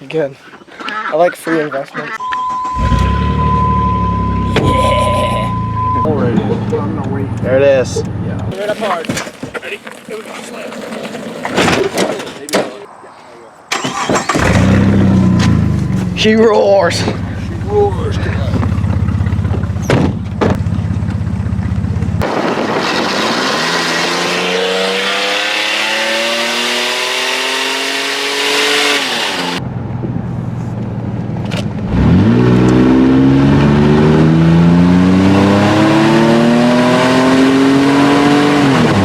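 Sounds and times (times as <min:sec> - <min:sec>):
lawn mower engine revving: 0:13.7 - 0:16.3, 0:21.3 - 0:29.6, 0:31.9 - 0:39.0.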